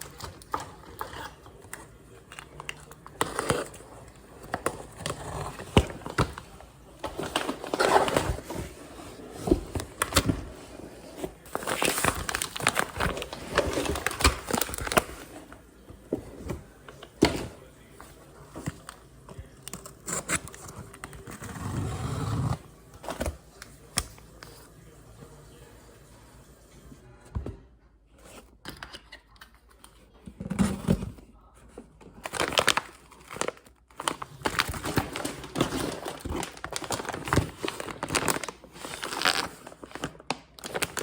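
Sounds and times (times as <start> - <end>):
packaging crinkling and rustling: 0.0 - 21.8, 32.1 - 41.0.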